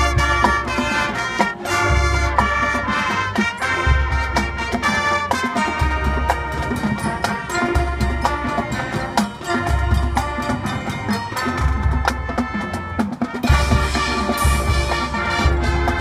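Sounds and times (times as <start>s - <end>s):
marching band playing: 0.0s - 16.0s.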